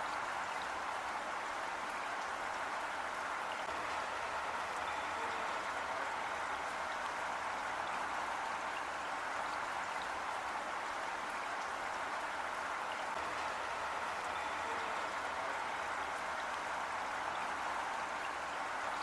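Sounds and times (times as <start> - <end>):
heavy rain falling: 1.3 - 19.0.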